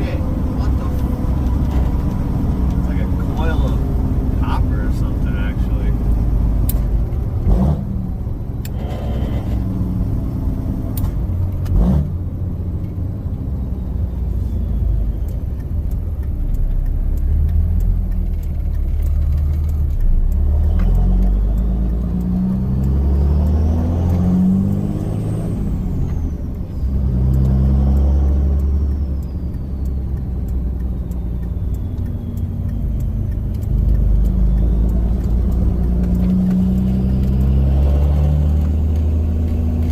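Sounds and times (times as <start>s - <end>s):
diesel engine pulling through gears: 0.0s - 39.9s
sharp clicks: 14.4s - 39.9s.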